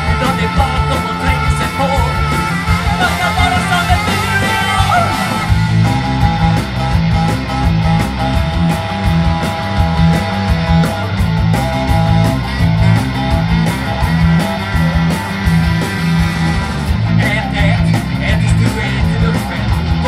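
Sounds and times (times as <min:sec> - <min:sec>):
drums steady beat: 0:00.0 - 0:20.0
electric guitar: 0:00.0 - 0:20.0
repeating bass line: 0:00.0 - 0:20.0.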